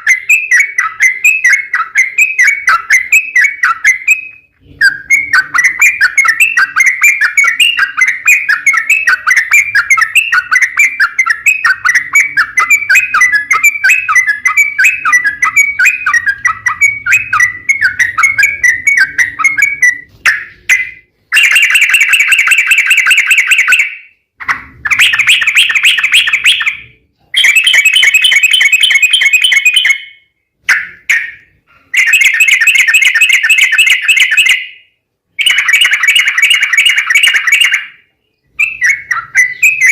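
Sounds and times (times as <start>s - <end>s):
bird chattering song: 0.0s - 39.9s.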